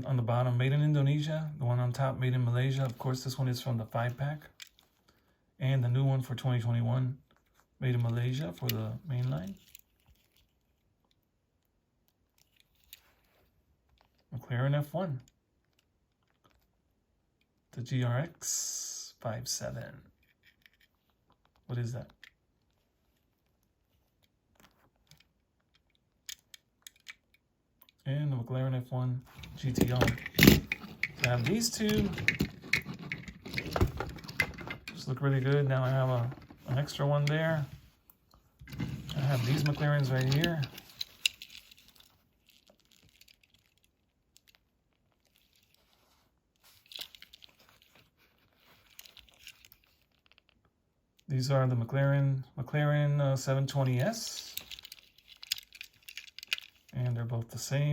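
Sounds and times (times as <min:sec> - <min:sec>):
handling rustles: 0:29.2 - 0:50.6, 0:53.8 - 0:57.0
toy cars clicking: 0:54.4 - 0:56.9.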